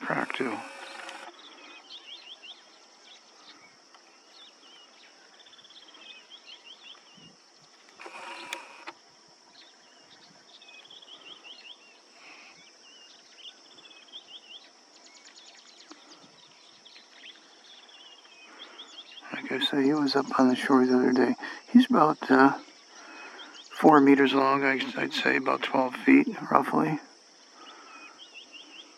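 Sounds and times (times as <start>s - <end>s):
high-pitched insect drone: 0.0s - 1.9s
small birds chirping: 0.0s - 28.9s.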